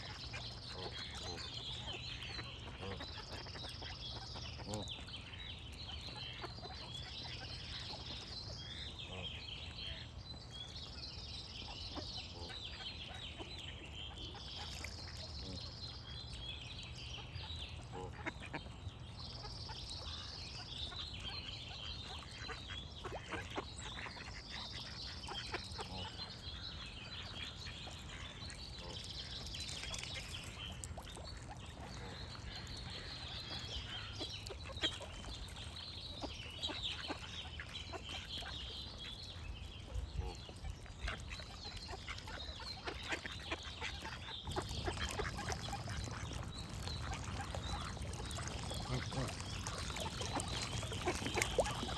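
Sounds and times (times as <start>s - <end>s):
ducks quacking: 0.0s - 5.1s, 8.7s - 9.4s, 17.9s - 18.7s, 21.8s - 30.3s, 40.2s - 51.9s
songbirds chirping: 0.0s - 51.9s.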